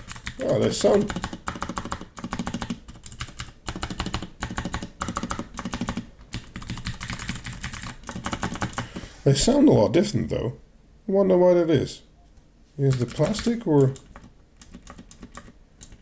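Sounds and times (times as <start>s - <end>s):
mechanical keyboard typing: 0.0s - 8.9s, 12.9s - 16.0s.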